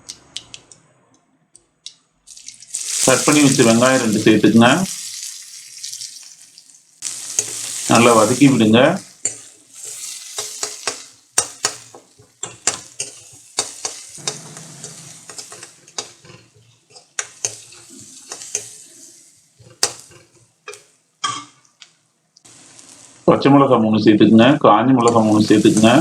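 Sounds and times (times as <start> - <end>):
faint oil sizzle: 2.3 - 23.7, 25.0 - 26.0
utensil scraping a pan: 7.0 - 21.6.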